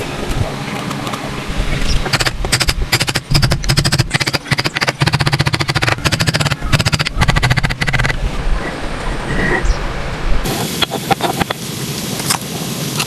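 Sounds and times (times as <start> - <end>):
hand tool cutting wood: 2.1 - 8.2.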